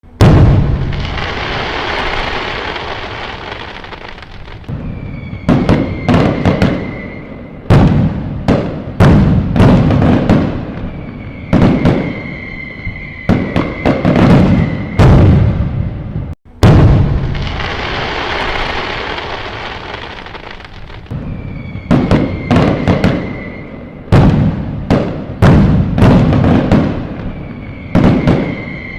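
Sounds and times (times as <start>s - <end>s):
firework crackling and rumbling: 0.0s - 28.9s
firework bangs: 0.1s - 28.9s
thin steady whistle: 4.7s - 7.6s, 10.8s - 15.1s, 21.1s - 24.1s, 27.3s - 28.9s.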